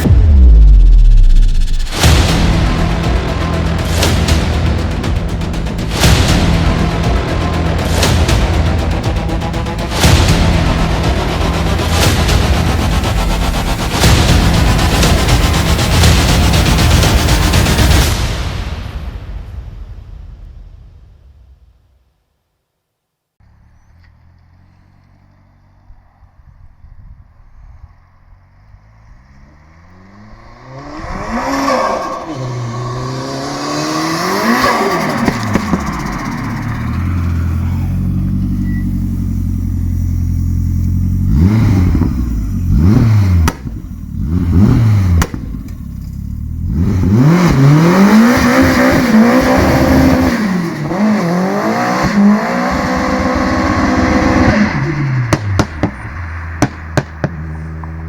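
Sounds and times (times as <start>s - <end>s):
exhaust cracks: 27.9s - 58.0s
car engine revving hard: 29.1s - 58.0s.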